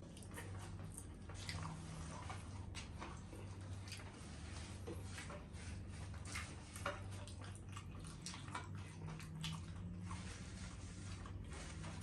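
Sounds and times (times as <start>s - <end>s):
chewing fried food: 0.0s - 12.0s
low steady hum: 0.0s - 12.0s.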